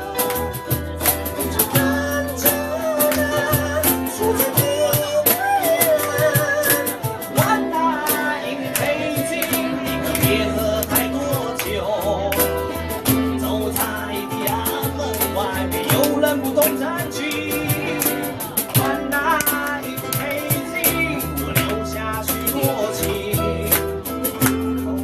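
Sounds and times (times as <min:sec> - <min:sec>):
person singing: 0:00.0 - 0:25.0
ukulele band playing: 0:00.0 - 0:25.0.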